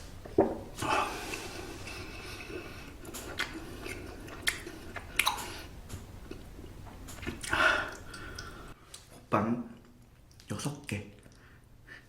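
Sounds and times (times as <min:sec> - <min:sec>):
chewing soft bun: 0:01.1 - 0:08.6
wet mouth clicks: 0:03.0 - 0:05.7.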